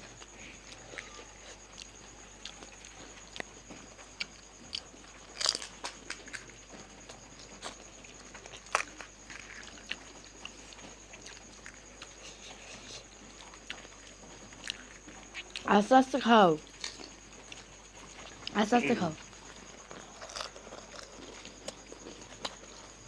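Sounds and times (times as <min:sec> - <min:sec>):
crisp shells crunching when chewed: 0:04.2 - 0:12.2, 0:19.3 - 0:23.0.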